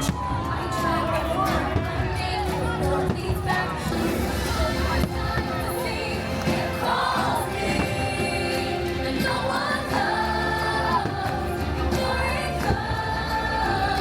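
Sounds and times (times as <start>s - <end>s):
music: 0.0s - 14.0s
choir singing sustained notes: 3.9s - 14.0s.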